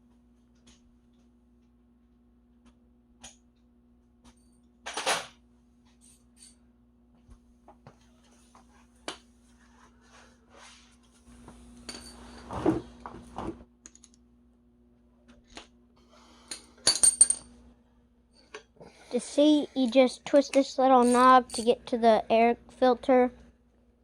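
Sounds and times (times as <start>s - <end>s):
metal tools clinking: 11.8s - 12.5s, 16.5s - 17.5s, 19.8s - 21.8s
loud ringing metallic clinks: 21.0s - 21.8s.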